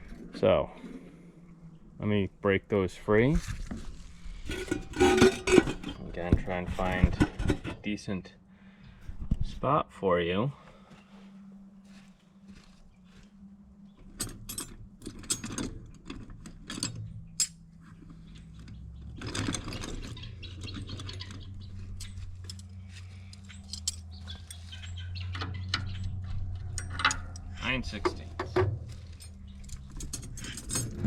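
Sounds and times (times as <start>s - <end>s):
low steady hum: 0.0s - 31.0s
metal hand tools clinking: 22.0s - 24.7s, 26.7s - 31.0s.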